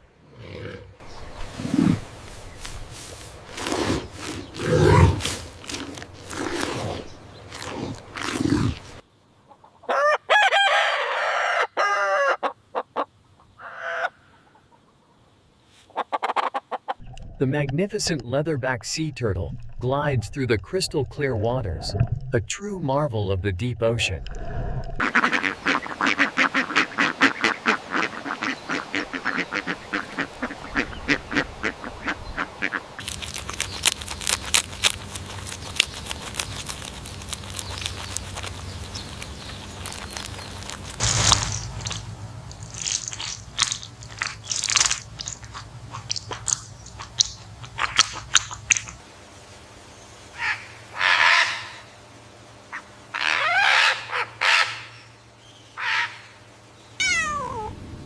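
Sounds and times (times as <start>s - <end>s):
ducks quacking: 25.0s - 33.0s.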